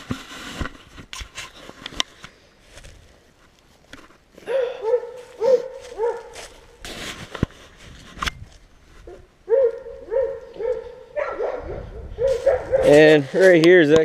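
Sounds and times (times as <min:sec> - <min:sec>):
dog whining in high yelps: 0:09.1 - 0:12.9.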